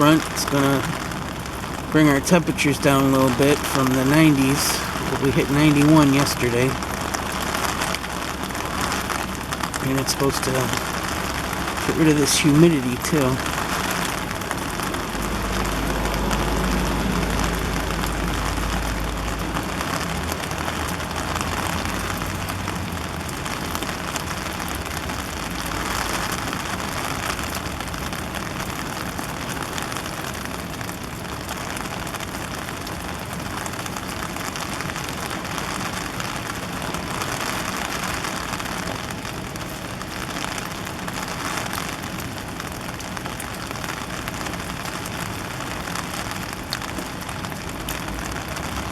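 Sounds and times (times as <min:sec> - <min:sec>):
heavy rain pouring: 0:00.0 - 0:48.9
low rumble: 0:13.0 - 0:26.2.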